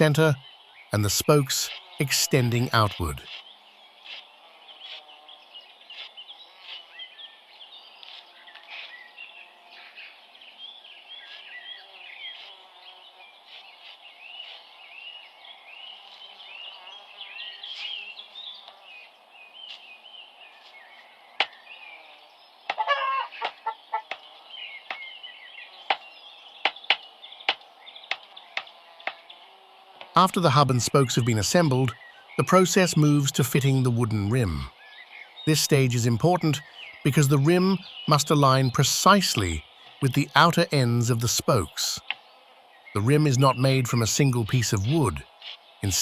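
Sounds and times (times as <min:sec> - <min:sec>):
birds chirping: 0:00.0 - 0:46.0.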